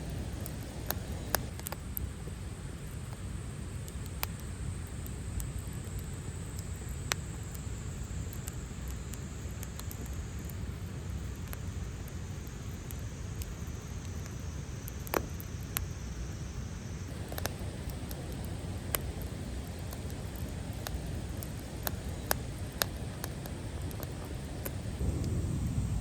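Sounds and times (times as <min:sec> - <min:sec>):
wood fire crackling: 0:00.0 - 0:02.0, 0:03.8 - 0:26.0
sharp pops of fire: 0:00.1 - 0:02.1, 0:17.1 - 0:26.0
steady low rumble: 0:17.1 - 0:26.0.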